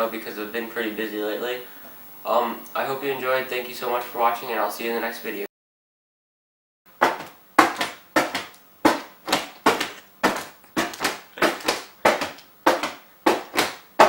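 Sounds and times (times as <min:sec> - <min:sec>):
sharp knocks: 0:07.0 - 0:14.0.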